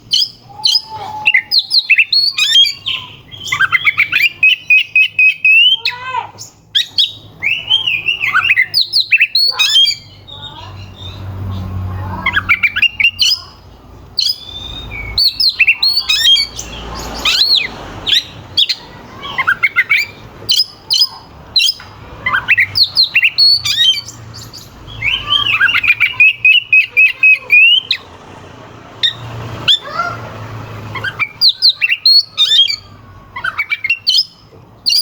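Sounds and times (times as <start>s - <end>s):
songbird singing sharp whistles: 0.1s - 5.8s, 6.8s - 10.1s, 14.2s - 18.8s, 19.4s - 28.0s.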